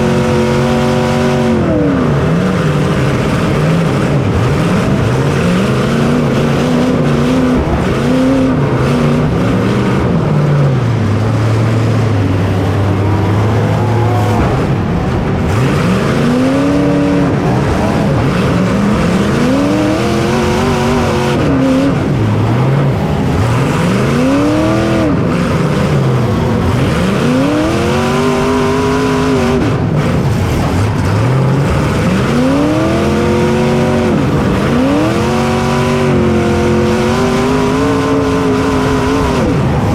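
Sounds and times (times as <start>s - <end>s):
racing engine revving: 0.0s - 39.9s.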